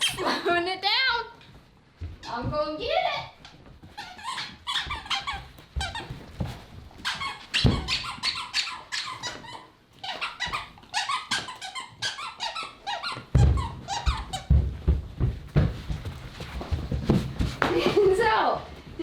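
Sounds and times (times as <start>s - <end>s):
rubber squeaky dog toy squeaking: 0.0s - 0.5s, 3.2s - 6.2s, 7.0s - 14.5s.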